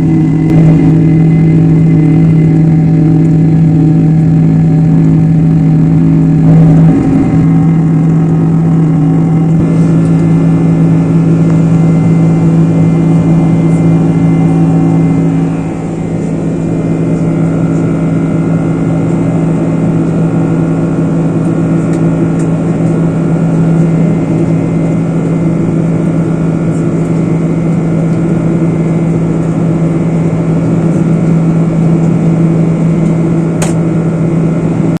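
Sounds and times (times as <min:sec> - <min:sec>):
jet engines at takeoff power: 0:00.0 - 0:35.0.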